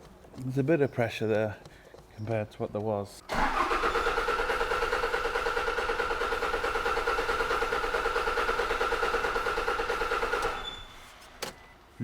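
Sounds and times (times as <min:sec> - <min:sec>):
starter cranking diesel engine: 0:03.3 - 0:10.9.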